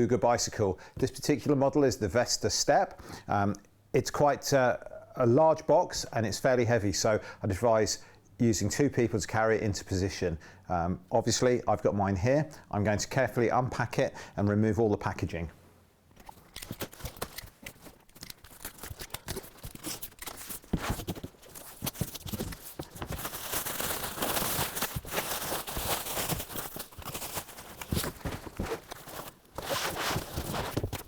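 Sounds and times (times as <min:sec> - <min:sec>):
packaging rustling and tearing: 0:16.2 - 0:31.0.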